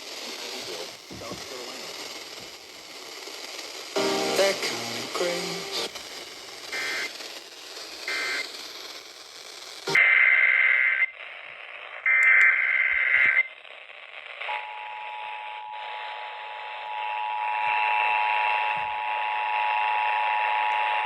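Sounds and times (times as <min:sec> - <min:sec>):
radio background hiss: 0:00.0 - 0:16.9
steady two-tone attention signal: 0:04.0 - 0:05.9.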